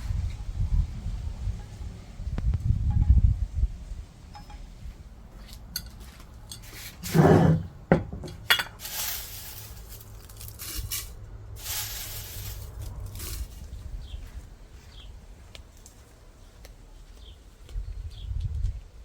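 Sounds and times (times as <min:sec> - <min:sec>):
dishes and utensils clinking: 0:04.4 - 0:04.6, 0:05.8 - 0:13.6
hiss-like noise: 0:08.8 - 0:13.8.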